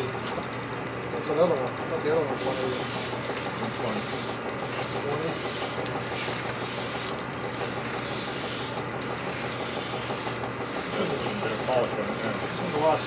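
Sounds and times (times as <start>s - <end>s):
motor hum: 0.0s - 13.0s
honing stone rubbing metal: 6.2s - 13.0s.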